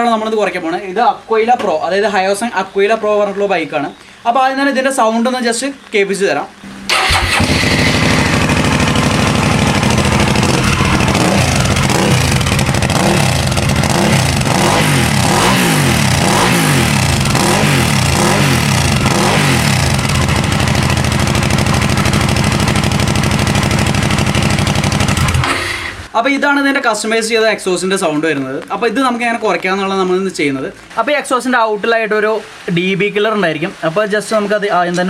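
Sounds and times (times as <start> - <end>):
motorcycle engine idling and revving: 6.9 - 26.1.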